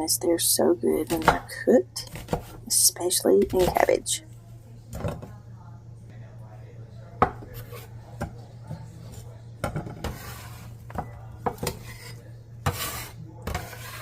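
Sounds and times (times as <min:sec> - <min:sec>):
steady low hum: 0:00.0 - 0:14.0
knife scraping board: 0:02.0 - 0:02.6, 0:07.5 - 0:07.9, 0:09.8 - 0:10.8, 0:11.5 - 0:14.0.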